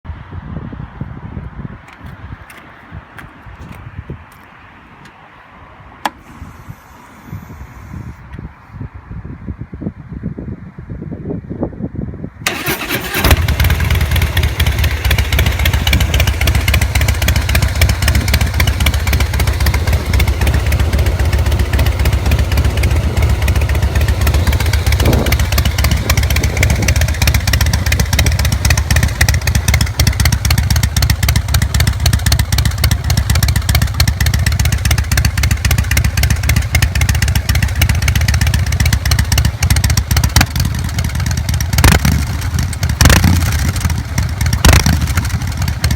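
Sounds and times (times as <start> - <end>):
motorcycle engine idling: 12.5 - 45.9.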